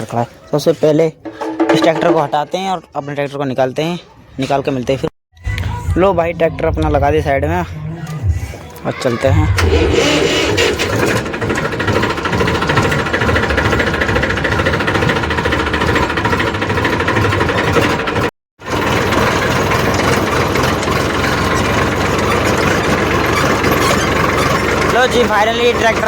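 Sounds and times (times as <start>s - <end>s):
tractor diesel engine running: 5.4s - 26.0s.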